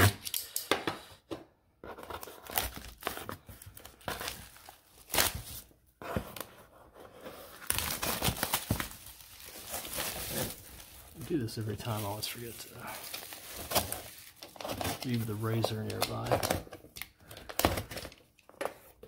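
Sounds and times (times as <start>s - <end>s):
plastic shrink wrap tearing: 7.6s - 18.3s.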